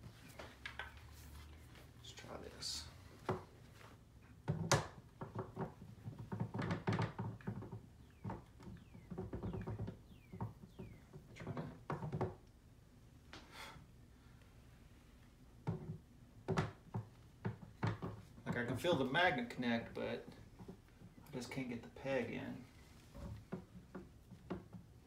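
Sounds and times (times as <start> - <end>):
knocks and clunks of handling: 3.0 - 12.6, 15.2 - 25.0.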